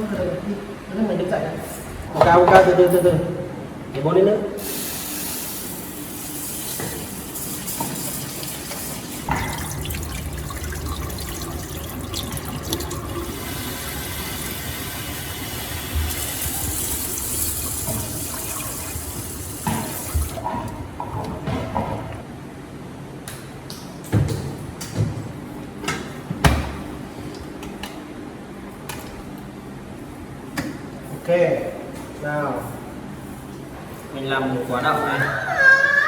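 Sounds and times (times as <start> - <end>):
water running and splashing: 5.7 - 20.7.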